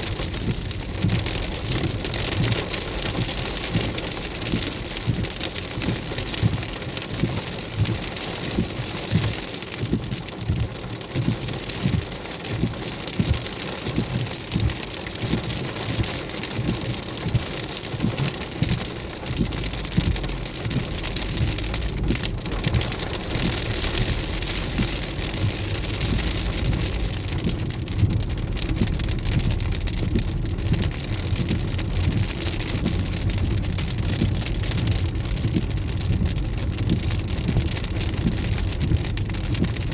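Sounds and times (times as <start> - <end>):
hail and rain pattering: 0.0 - 39.9
low rumble: 18.1 - 39.9.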